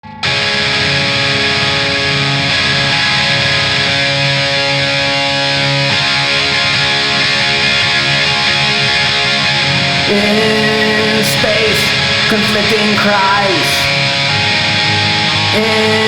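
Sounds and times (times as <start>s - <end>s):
distorted electric guitars: 0.0s - 16.0s.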